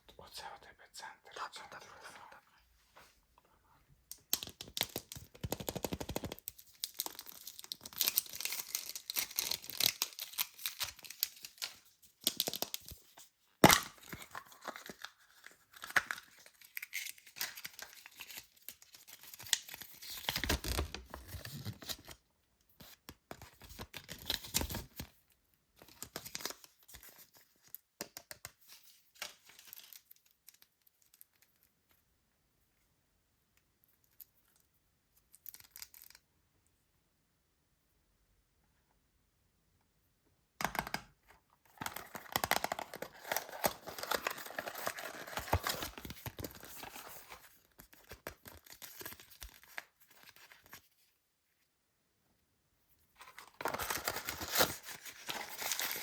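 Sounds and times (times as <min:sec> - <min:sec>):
packaging being torn and crinkled: 0:04.1 - 0:13.0, 0:13.6 - 0:22.2, 0:35.4 - 0:36.2, 0:41.8 - 0:50.9, 0:53.2 - 0:56.0.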